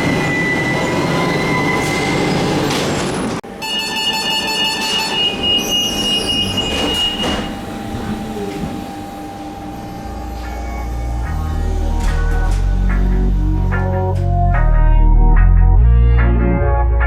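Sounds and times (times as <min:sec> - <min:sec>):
high-pitched wheel squeal: 0:04.9 - 0:07.5
train rumble: 0:04.9 - 0:14.8.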